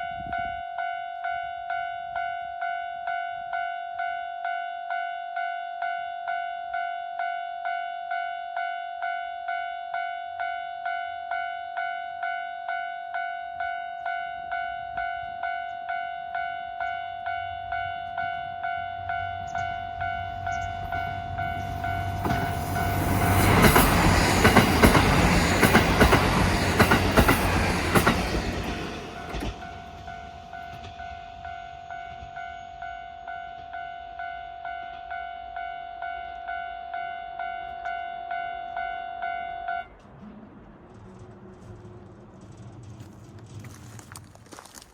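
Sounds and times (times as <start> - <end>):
level crossing warning bell: 0.0 - 26.1
diesel train rumbling and clattering: 17.4 - 32.4, 39.8 - 44.9.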